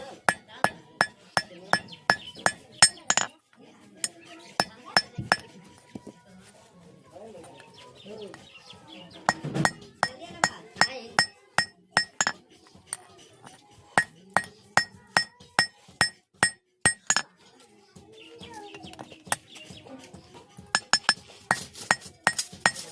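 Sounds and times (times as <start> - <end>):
hammer striking steel on anvil: 0.2 - 3.3, 4.0 - 5.5, 9.2 - 17.2, 20.7 - 22.9.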